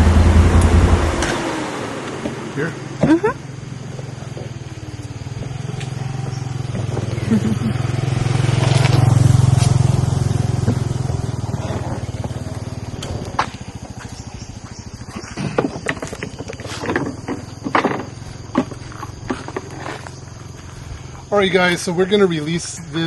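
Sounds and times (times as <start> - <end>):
vehicle engine passing: 0.0 - 23.0.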